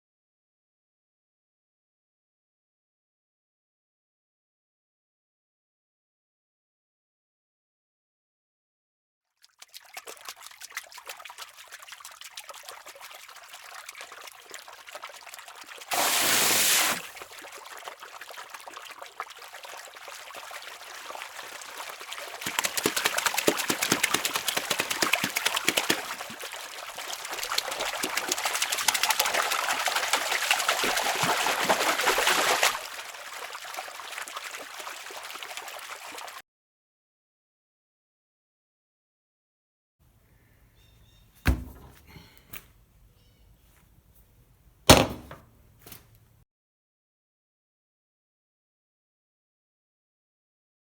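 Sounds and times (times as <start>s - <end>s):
water trickling and splashing: 9.4s - 36.4s
water rushing: 14.4s - 36.4s.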